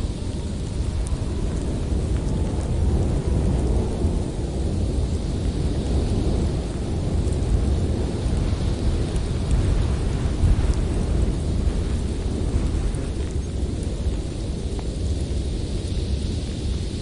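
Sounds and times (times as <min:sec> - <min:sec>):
strong wind through forest: 0:00.0 - 0:17.0.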